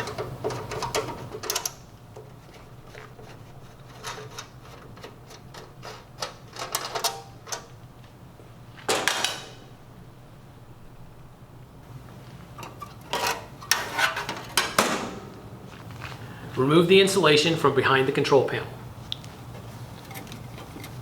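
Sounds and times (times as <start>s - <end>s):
metal cover handling noise: 0.0s - 7.8s, 8.8s - 9.8s, 12.5s - 16.0s.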